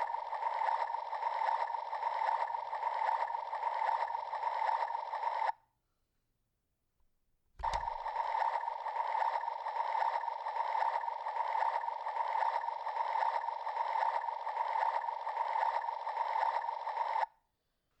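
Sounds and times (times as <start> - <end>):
toy mixer whirring: 0.0 - 5.6, 7.6 - 17.4
toy mixer switch click: 7.6 - 7.9.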